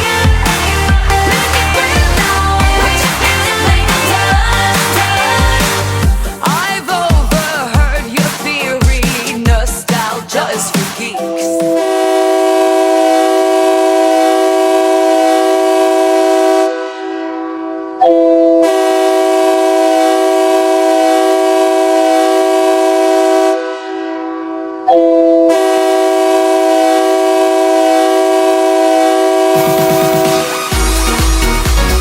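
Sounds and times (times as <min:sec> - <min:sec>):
goal air horn blasts: 0:11.7 - 0:31.5.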